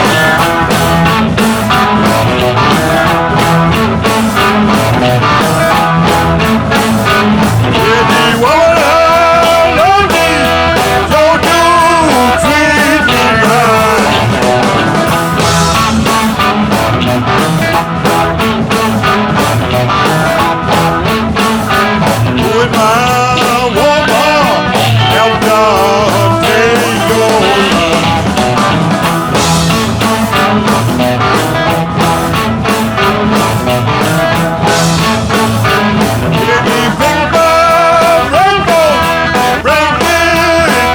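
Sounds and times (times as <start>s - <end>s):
rock music with electric guitar: 0.0s - 40.9s
person singing: 7.5s - 15.1s, 22.0s - 28.7s, 36.1s - 40.9s.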